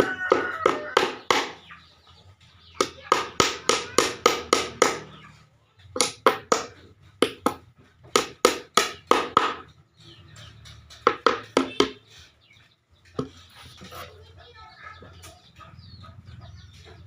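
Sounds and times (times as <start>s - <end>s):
hammer striking wooden boards: 0.0s - 1.7s, 2.8s - 5.1s, 6.0s - 9.7s, 10.9s - 12.0s.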